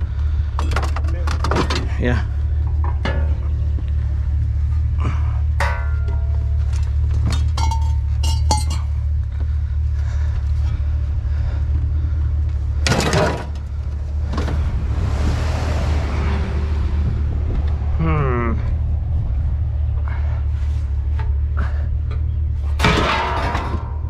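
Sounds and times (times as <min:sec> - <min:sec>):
steady low rumble: 0:00.0 - 0:24.0
sharp clinks and knocks: 0:05.6 - 0:09.0.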